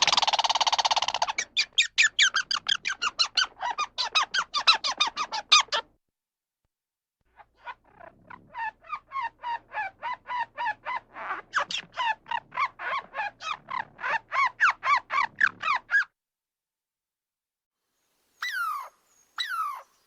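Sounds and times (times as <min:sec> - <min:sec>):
animal chirping calls: 0:00.0 - 0:05.9, 0:07.6 - 0:16.1, 0:18.4 - 0:20.0.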